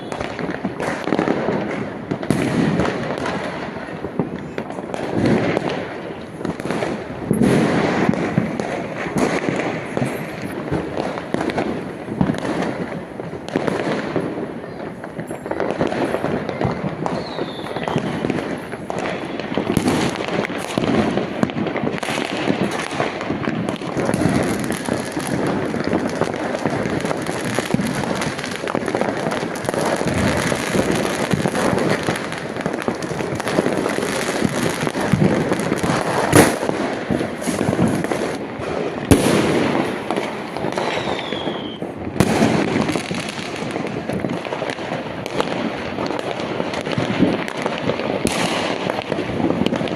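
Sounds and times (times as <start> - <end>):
fireworks crackling and popping: 0.0 - 49.9
sharp firework bang: 6.4 - 12.8, 35.0 - 43.7, 48.2 - 49.9
short falling whistle: 40.9 - 41.8.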